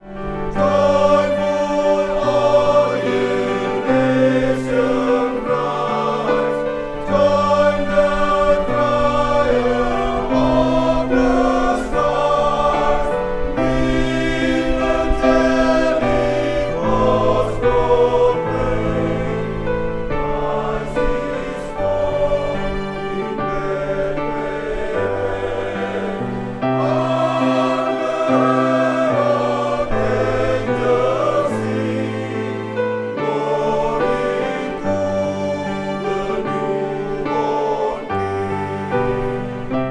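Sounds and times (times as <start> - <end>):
men's choir singing a hymn: 0.0 - 39.9.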